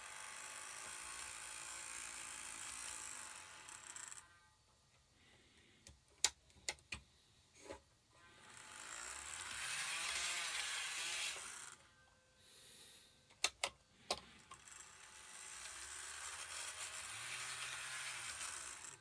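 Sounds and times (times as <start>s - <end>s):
model train motor whirring: 0.0s - 4.3s, 8.2s - 12.0s, 14.2s - 19.0s
sharp clicks: 13.3s - 14.2s.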